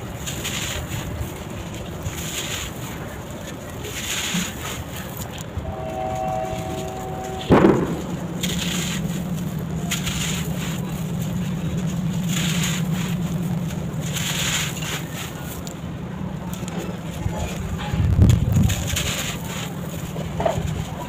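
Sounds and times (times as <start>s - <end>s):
steady low hum: 0.0s - 21.0s
sharp hit: 5.7s - 9.3s
gritty crushing and crumbling: 7.5s - 21.0s.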